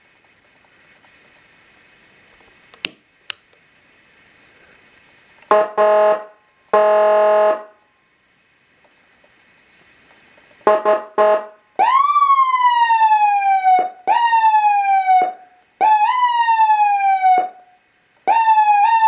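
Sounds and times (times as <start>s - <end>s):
switch clicks: 2.8s - 3.6s.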